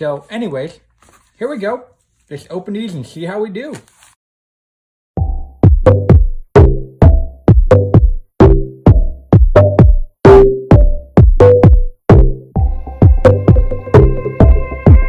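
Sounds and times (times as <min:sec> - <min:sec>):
drum machine beat: 0:05.2 - 0:15.0
electronic music: 0:05.2 - 0:15.0
low bass line: 0:05.2 - 0:15.0.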